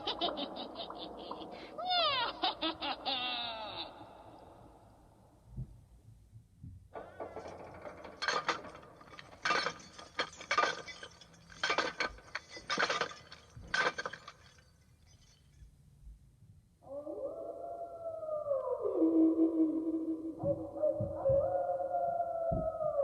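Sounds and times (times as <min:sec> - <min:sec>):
metallic clinking and rattling: 0:07.0 - 0:15.9.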